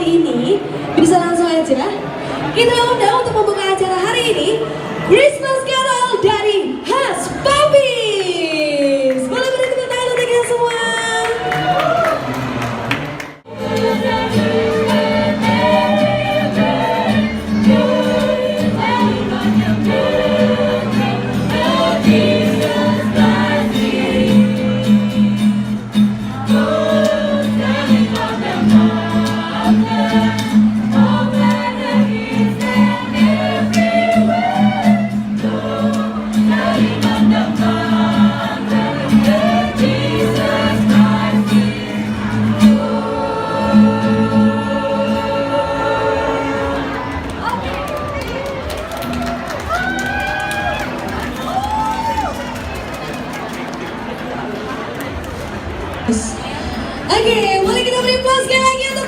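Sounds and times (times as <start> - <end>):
choir singing a carol: 13.4 - 47.4.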